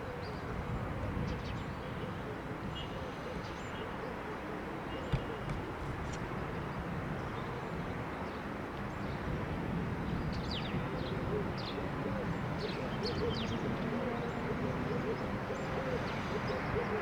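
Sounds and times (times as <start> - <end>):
brief knock: 5.1 - 5.7.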